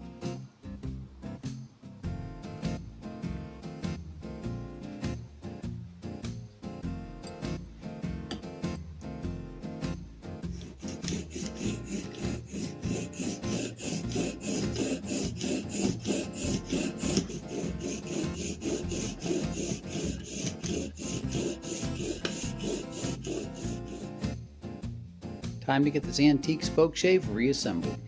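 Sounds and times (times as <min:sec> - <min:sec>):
background music: 0:00.0 - 0:28.0
rubbing strokes on a tool part: 0:10.5 - 0:24.4.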